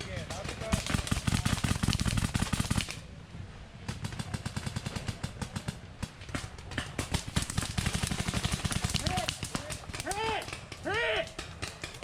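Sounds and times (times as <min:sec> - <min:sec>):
paintball markers firing: 0:03.9 - 0:12.0.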